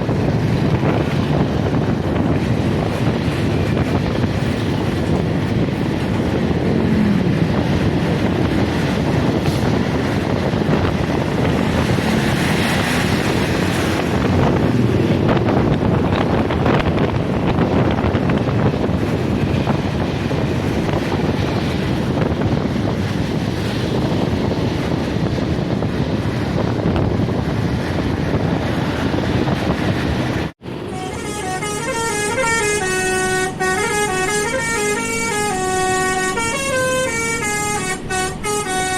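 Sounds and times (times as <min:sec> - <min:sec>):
road and wind noise: 0:00.0 - 0:38.9
musical air horn playing tune: 0:30.7 - 0:38.9.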